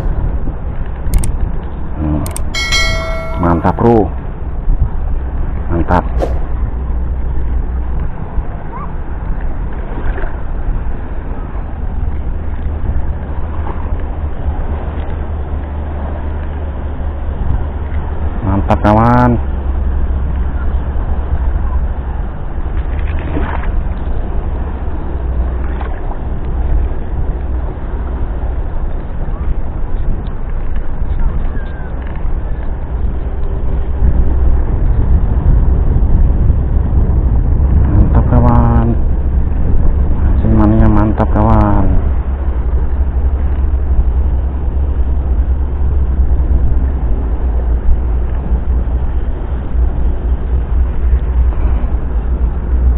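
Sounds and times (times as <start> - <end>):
wind buffeting microphone: 0.0 - 18.4, 19.4 - 52.9.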